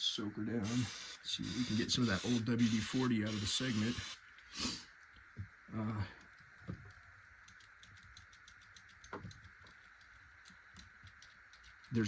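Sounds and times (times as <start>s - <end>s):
faint steady hiss: 0.0s - 12.0s.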